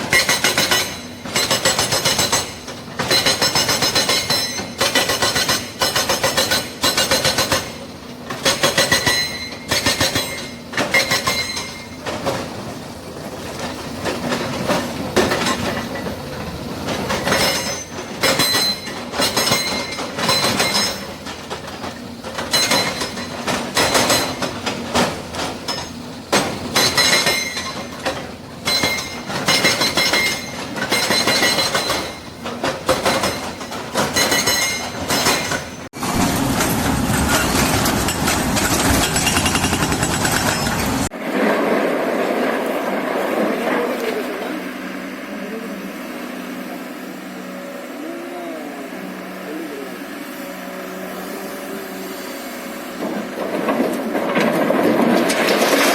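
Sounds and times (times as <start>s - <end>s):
hydraulic breaker hammering: 0.0s - 41.2s.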